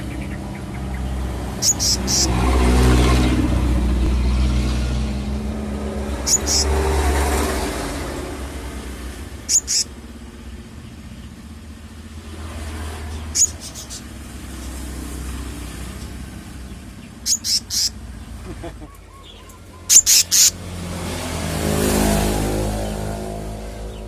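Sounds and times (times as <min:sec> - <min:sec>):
bird chirping: 0:00.0 - 0:02.7, 0:05.6 - 0:11.8, 0:12.8 - 0:20.6
passing motor vehicle rumble: 0:00.0 - 0:24.0.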